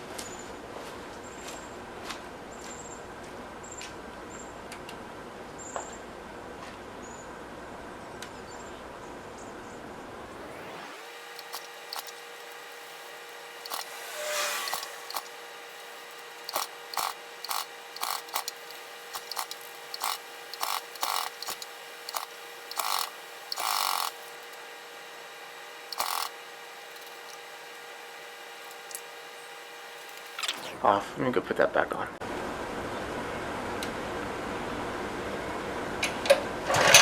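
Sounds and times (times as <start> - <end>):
pressure washer engine hum: 10.0 - 30.9
hissing spray bursts: 10.4 - 30.8.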